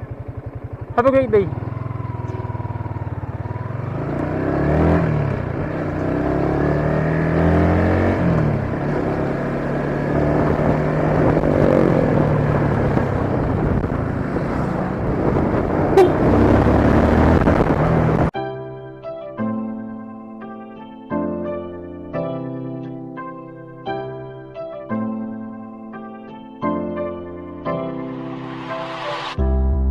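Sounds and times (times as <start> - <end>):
motorcycle engine accelerating: 0.0 - 18.4, 27.1 - 29.8.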